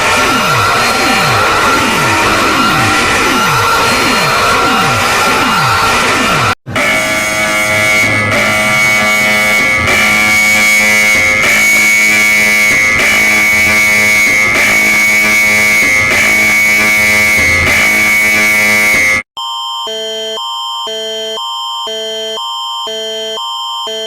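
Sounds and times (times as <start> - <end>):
distorted alert sound: 0.0 - 19.2
steady high tone: 0.0 - 20.0
alternating beeps: 0.0 - 24.0.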